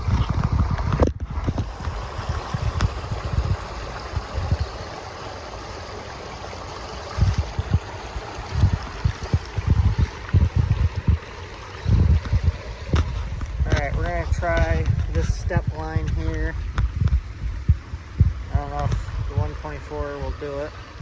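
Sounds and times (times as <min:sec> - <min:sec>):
wind buffeting microphone: 0:00.0 - 0:06.0, 0:06.7 - 0:21.0
steady rushing hiss: 0:00.0 - 0:21.0.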